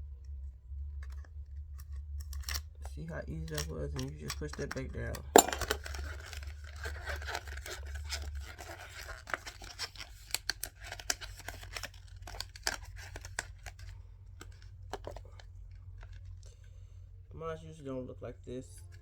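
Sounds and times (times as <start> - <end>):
plastic and paper crinkling: 3.3 - 16.5.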